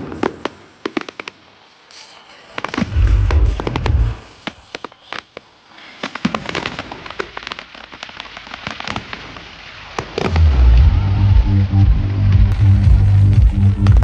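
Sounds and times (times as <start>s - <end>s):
fireworks crackling and popping: 0.0s - 10.5s, 12.5s - 14.0s
loud bass-heavy music: 10.4s - 14.0s.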